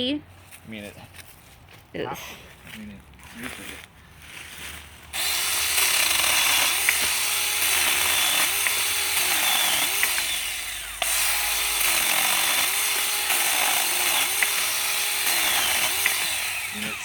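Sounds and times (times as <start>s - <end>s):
electric chainsaw cutting brush: 5.1s - 17.0s.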